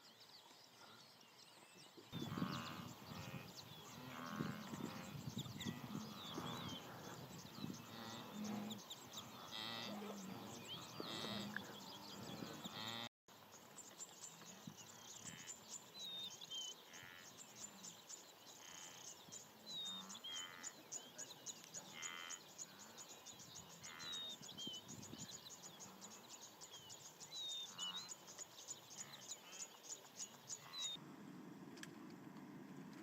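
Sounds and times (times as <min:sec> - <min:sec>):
birds chirping: 0:00.0 - 0:31.0
wildebeest grunting and lowing: 0:02.2 - 0:13.1, 0:18.6 - 0:24.9.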